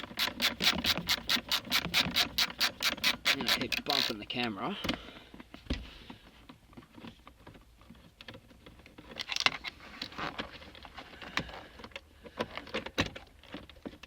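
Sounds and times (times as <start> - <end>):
hand tool clicking on bolt: 0.0 - 4.2.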